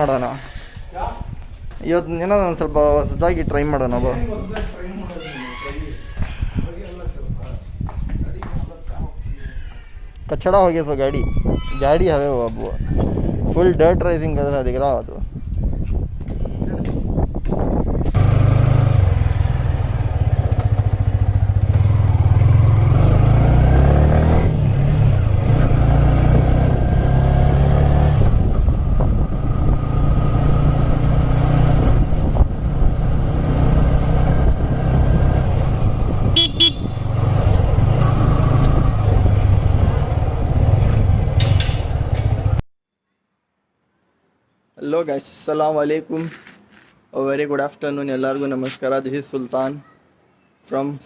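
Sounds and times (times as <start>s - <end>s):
motorcycle engine running: 18.2s - 23.4s, 28.3s - 42.6s
horn toot: 36.3s - 37.3s.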